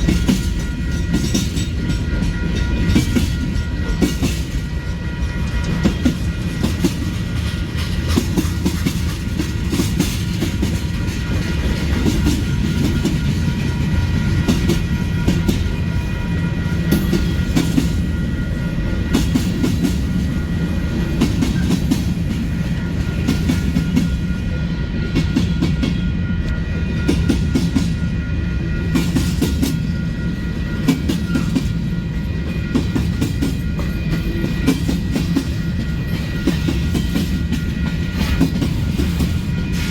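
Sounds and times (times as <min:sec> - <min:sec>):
freight train rumbling past: 0:00.0 - 0:39.9
wheels clacking over rail joints: 0:05.4 - 0:15.8.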